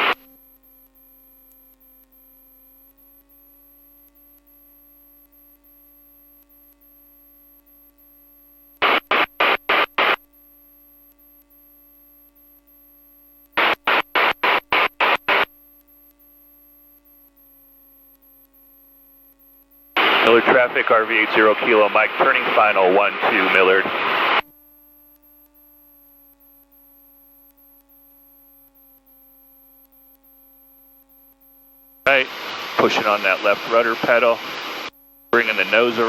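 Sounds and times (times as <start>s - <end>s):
radio noise bursts: 0.0s - 0.2s, 8.8s - 10.2s, 13.6s - 15.5s, 20.0s - 24.4s, 32.1s - 36.0s
faint electrical whine: 0.0s - 36.0s.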